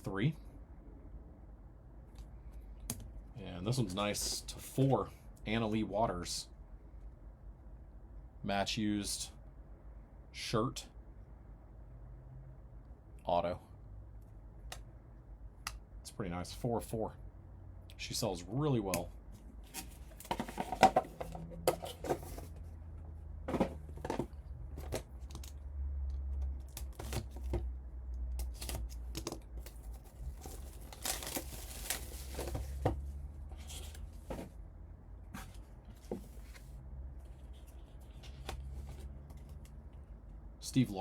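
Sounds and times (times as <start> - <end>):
low steady hum: 0.0 - 41.0
card packaging tearing and crinkling: 28.4 - 32.8.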